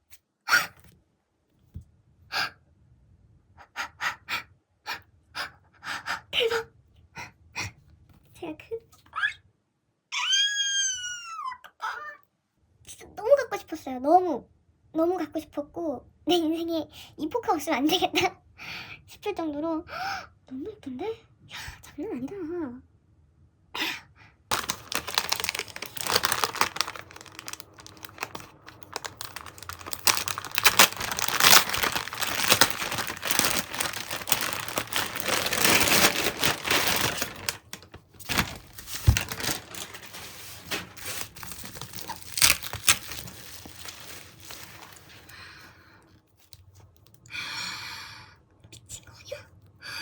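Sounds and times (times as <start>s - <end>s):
packaging rustling and crackling: 24.5s - 45.3s.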